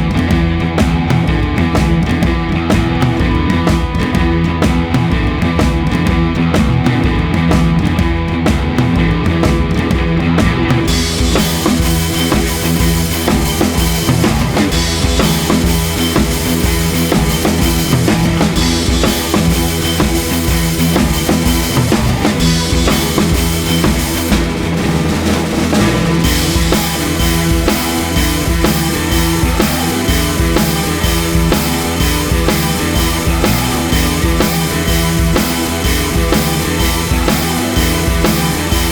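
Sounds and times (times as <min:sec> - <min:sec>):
drum kit beat: 0:00.0 - 0:38.9
guitar: 0:00.0 - 0:38.9
rock music: 0:00.0 - 0:38.9
cymbals: 0:10.9 - 0:38.9.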